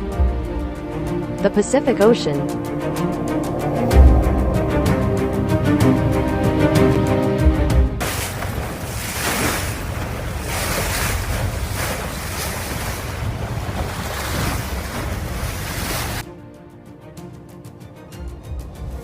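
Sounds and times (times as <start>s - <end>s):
ocean waves rushing: 7.9s - 16.2s
wind rumble on microphone: 8.4s - 16.2s.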